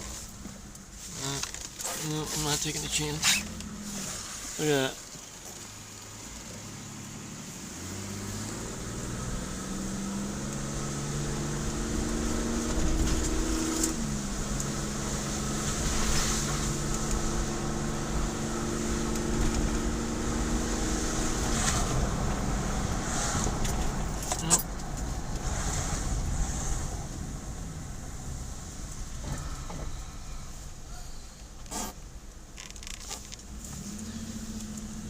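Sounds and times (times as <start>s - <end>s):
car engine accelerating: 0.0s - 35.0s
low road rumble: 0.0s - 35.0s.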